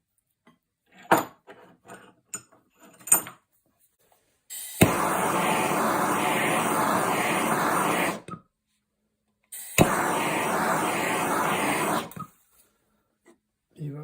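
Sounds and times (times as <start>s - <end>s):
blowtorch flame hissing: 4.5s - 8.3s, 9.6s - 12.3s
blowtorch igniter click: 4.5s - 8.3s, 9.6s - 12.3s.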